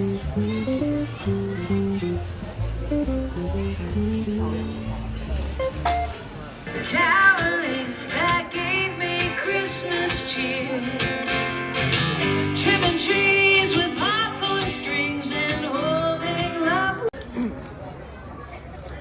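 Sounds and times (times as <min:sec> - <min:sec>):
acoustic guitar: 0:00.0 - 0:17.8
person singing: 0:06.7 - 0:11.4, 0:12.2 - 0:17.1.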